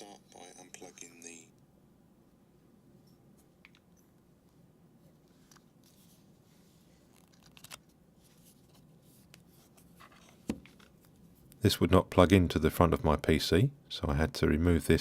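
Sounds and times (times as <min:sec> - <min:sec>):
soft rustles: 0:05.0 - 0:11.5.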